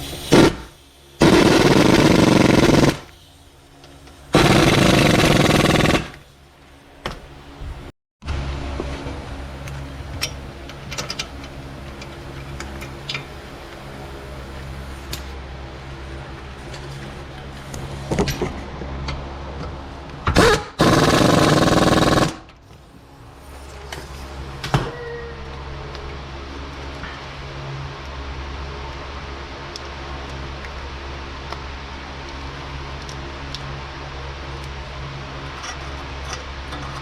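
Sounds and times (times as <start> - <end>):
low shop hum: 0.0 - 37.0
power wrench running: 1.2 - 3.2, 4.3 - 6.3, 20.4 - 22.4.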